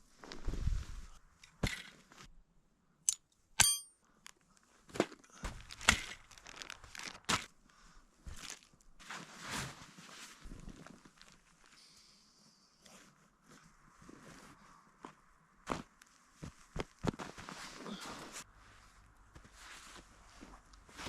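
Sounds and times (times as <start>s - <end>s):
sharp high ringing: 3.6s - 4.0s
footsteps crunching in snow: 14.0s - 18.4s, 19.3s - 21.0s.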